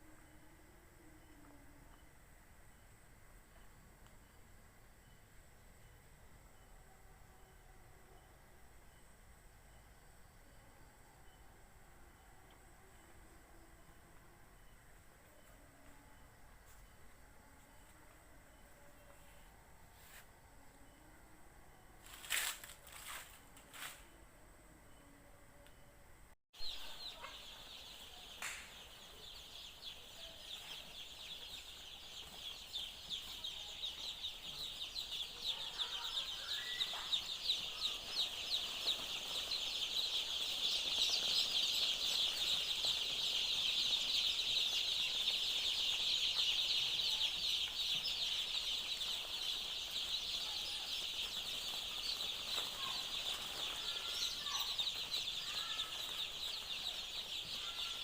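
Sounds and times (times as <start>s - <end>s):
chicks peeping: 26.6s - 58.0s.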